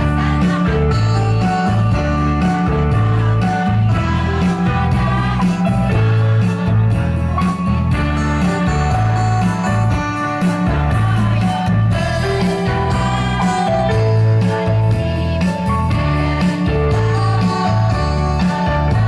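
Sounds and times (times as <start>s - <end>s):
bass line: 0.0s - 19.0s
guitar: 0.0s - 19.0s.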